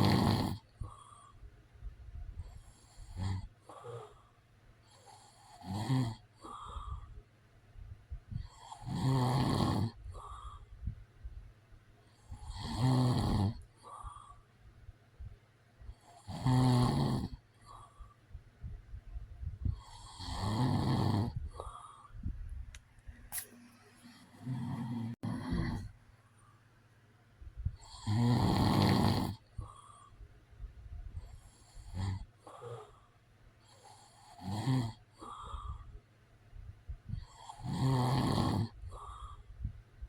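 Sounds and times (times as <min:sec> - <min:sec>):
man snoring: 0:00.0 - 0:01.2, 0:02.8 - 0:04.2, 0:04.9 - 0:07.0, 0:08.5 - 0:10.5, 0:12.3 - 0:14.2, 0:16.1 - 0:17.9, 0:19.8 - 0:21.9, 0:24.3 - 0:25.9, 0:27.8 - 0:30.0, 0:31.6 - 0:33.0, 0:33.8 - 0:35.8, 0:37.2 - 0:39.4
quiet breaths: 0:00.0 - 0:40.0.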